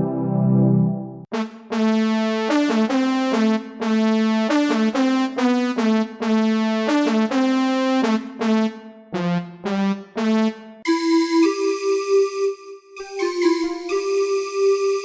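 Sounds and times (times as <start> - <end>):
electric piano synthesizer notes: 0.0 - 1.8, 10.9 - 15.0.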